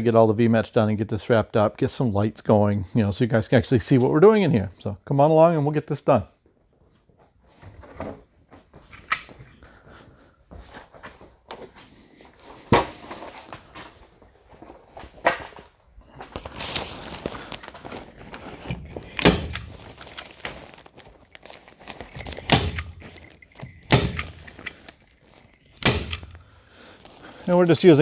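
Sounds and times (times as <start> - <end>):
plastic sheet rustling: 12.6 - 28.0
staple gun snapping: 19.2 - 20.3, 22.4 - 24.9, 25.8 - 26.4.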